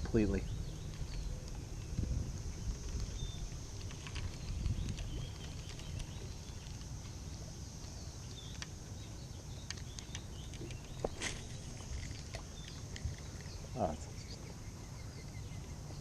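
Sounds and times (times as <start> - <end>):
faint bird chirps: 0.1 - 16.0
small clicks: 9.6 - 13.6.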